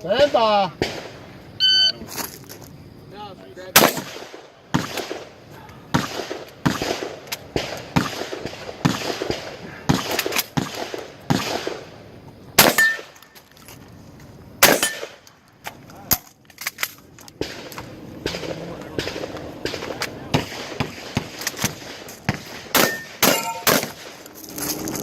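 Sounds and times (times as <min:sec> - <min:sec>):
shotgun shots: 0:00.8 - 0:01.2, 0:03.7 - 0:11.9, 0:12.6 - 0:13.2, 0:14.6 - 0:15.2, 0:17.4 - 0:24.2.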